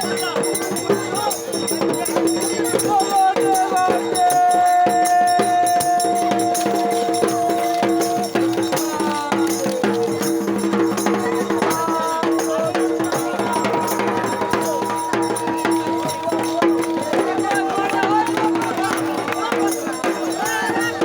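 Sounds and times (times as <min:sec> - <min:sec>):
drums and rattling percussion: 0:00.0 - 0:21.0.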